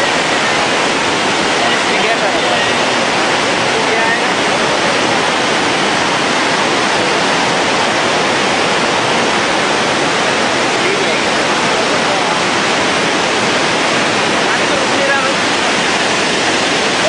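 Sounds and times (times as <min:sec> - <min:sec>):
river water rushing: 0:00.0 - 0:17.0.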